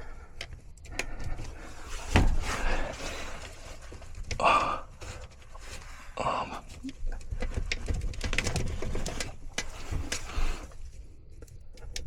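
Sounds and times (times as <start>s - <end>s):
person grunting and breathing: 4.3s - 5.2s, 6.0s - 6.9s.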